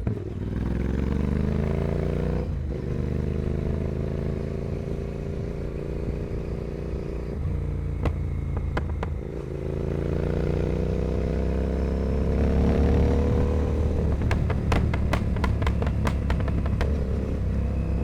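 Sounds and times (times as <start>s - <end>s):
motorcycle engine accelerating: 0.0s - 18.0s
exhaust cracks: 13.3s - 17.4s.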